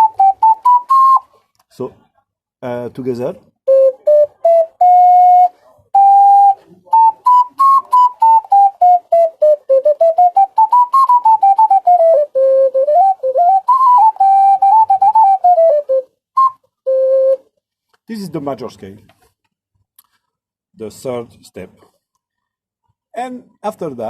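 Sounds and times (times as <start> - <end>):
ocarina playing a scale: 0.0 - 1.4, 3.6 - 17.6.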